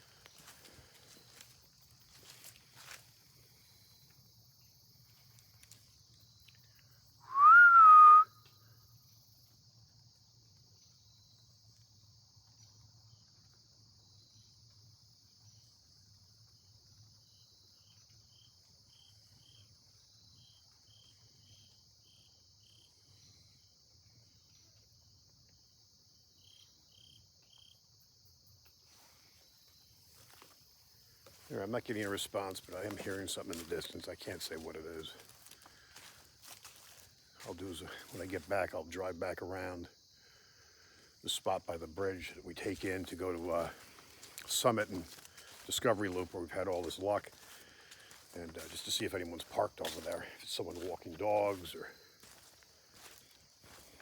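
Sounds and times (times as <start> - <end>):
insects chirring: 0.0 - 54.0
person whistling rising pitch: 7.3 - 8.3.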